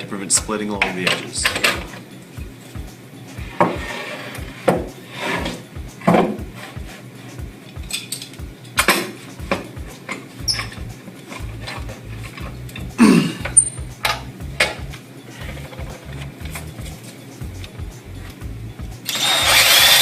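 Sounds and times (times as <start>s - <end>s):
knocks and clatter of hard objects: 4.7s - 6.9s.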